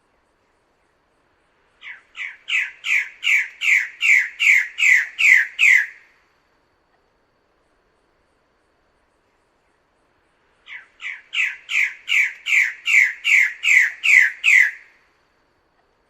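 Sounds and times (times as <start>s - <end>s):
bird giving harsh calls: 1.8s - 6.0s, 10.7s - 14.9s.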